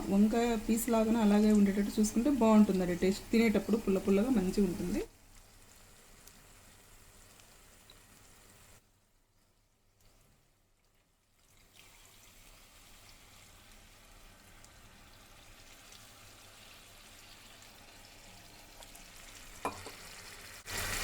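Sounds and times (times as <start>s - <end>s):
liquid pouring into pan: 10.0s - 21.0s.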